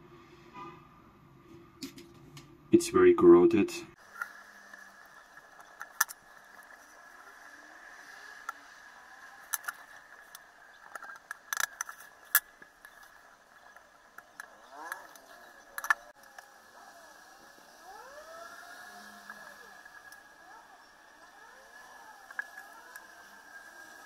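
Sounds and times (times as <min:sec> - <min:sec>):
tools clicking on metal parts: 0:09.4 - 0:16.5.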